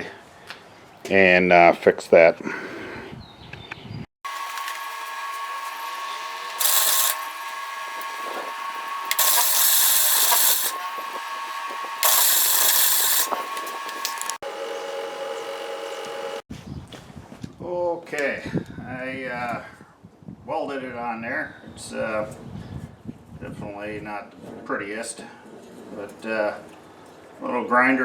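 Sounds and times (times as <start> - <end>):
welding arc crackling: 4.3 - 14.4
steady hum: 4.3 - 16.4.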